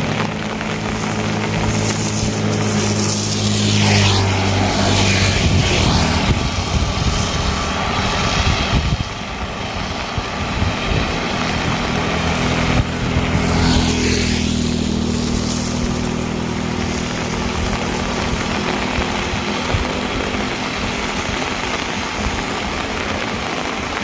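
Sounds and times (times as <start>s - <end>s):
constant hiss: 0.0s - 8.4s
vehicle engine humming: 0.0s - 24.0s.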